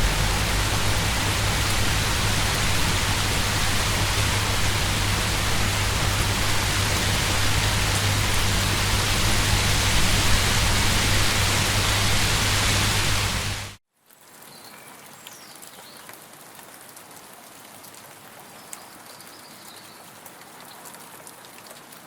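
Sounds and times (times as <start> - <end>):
low steady rumble: 0.0 - 13.7
heavy rain: 0.0 - 14.5.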